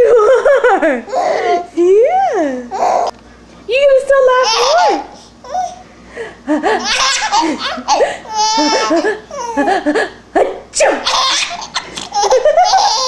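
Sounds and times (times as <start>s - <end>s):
baby laughing: 0.0s - 1.7s, 2.7s - 3.1s, 4.4s - 5.8s, 6.6s - 13.0s.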